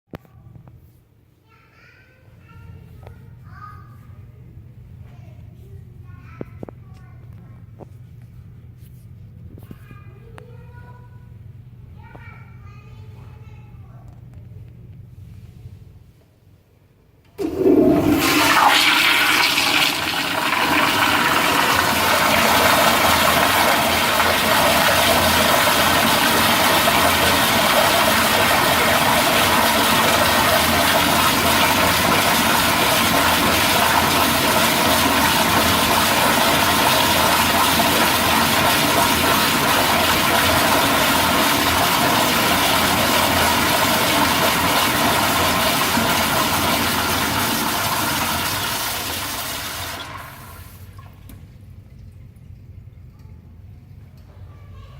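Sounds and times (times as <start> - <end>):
toilet flushing: 17.4 - 52.9.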